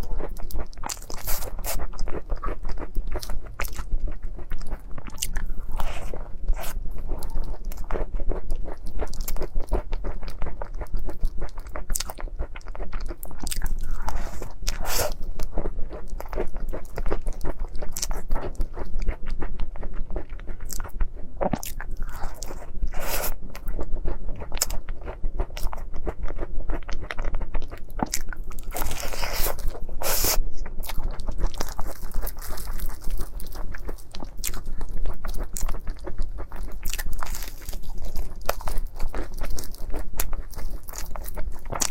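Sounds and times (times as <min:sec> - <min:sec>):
person chewing with wet mouth clicks: 0:00.0 - 0:41.9.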